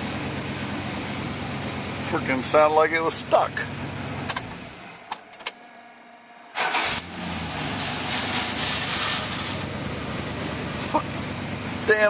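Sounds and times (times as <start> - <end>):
truck engine running: 0.0 - 12.0
starter motor cranking: 6.6 - 7.2.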